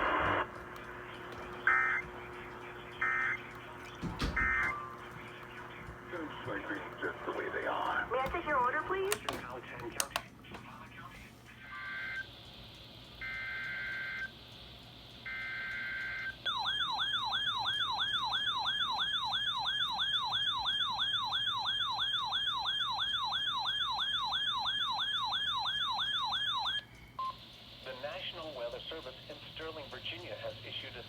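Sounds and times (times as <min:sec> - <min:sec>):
harsh two-pitch data buzz: 0:00.0 - 0:06.2
warbling siren-like alert tone: 0:16.5 - 0:26.9.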